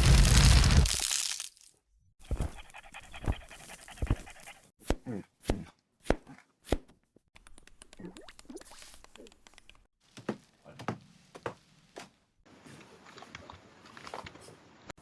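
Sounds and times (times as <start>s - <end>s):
dog panting: 2.2s - 4.7s.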